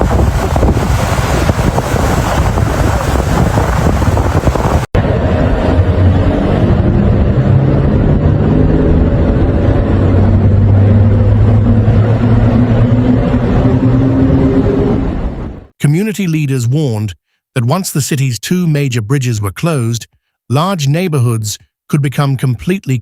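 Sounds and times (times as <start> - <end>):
low engine drone: 0.0 - 15.7
wind buffeting microphone: 0.0 - 15.7.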